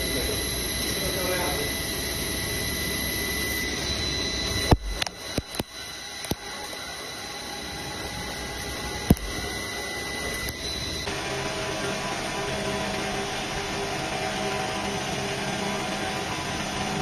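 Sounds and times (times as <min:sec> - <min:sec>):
cnc machine whine: 0:00.0 - 0:17.0
machine hum: 0:00.0 - 0:17.0
sharp clicks: 0:04.6 - 0:06.8, 0:09.0 - 0:09.5, 0:10.2 - 0:10.6.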